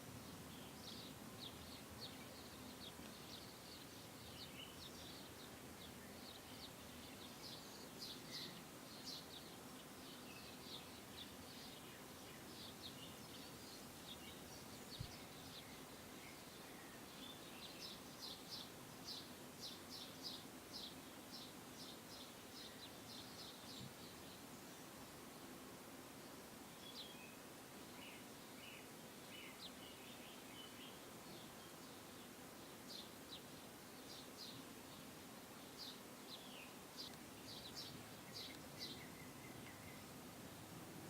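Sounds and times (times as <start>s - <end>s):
small bird chirping: 35.7s - 40.2s.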